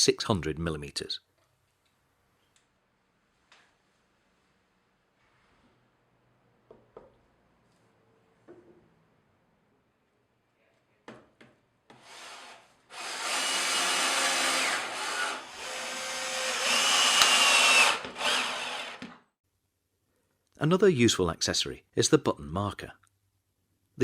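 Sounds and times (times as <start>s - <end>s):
power drill running: 12.1s - 19.2s.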